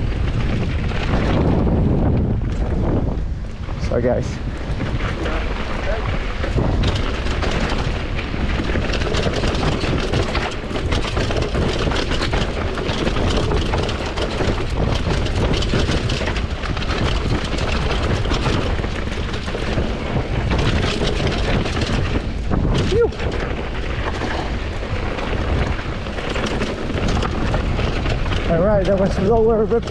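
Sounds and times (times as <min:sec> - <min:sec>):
bike chain and frame rattling: 0:00.0 - 0:29.9
bike tyres rumbling on dirt trail: 0:00.0 - 0:29.9
wind buffeting microphone: 0:00.0 - 0:29.9.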